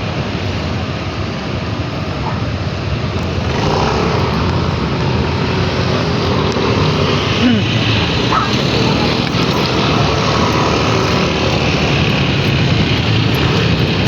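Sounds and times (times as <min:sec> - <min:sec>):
engine hum: 0:00.0 - 0:14.0
vehicle and road noise: 0:00.0 - 0:14.0.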